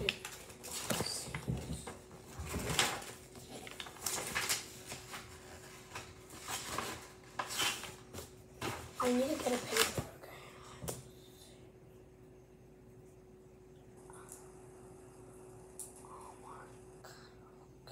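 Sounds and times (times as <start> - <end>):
handling rustles and scrapes: 0.2 - 10.1.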